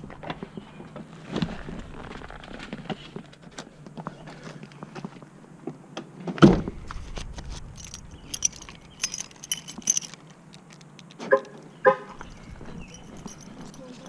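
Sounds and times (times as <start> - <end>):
keys jangling: 7.7 - 11.2, 12.2 - 14.0.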